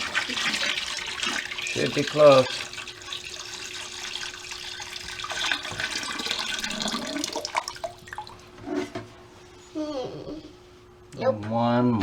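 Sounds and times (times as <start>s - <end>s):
water pouring into sump pit: 0.0s - 8.4s.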